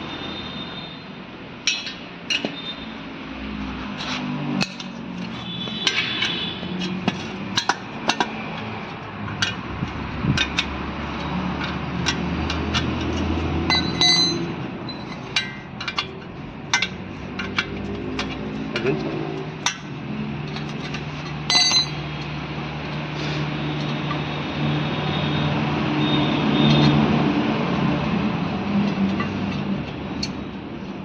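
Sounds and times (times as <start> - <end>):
spanner clinking on metal: 1.7 - 2.8, 4.0 - 22.4, 28.8 - 30.6
metallic tink: 13.7 - 15.6, 21.5 - 22.0.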